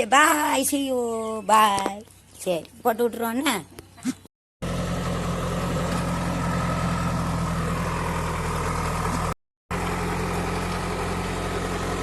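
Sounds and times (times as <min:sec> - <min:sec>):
diesel engine running: 0:04.6 - 0:12.0.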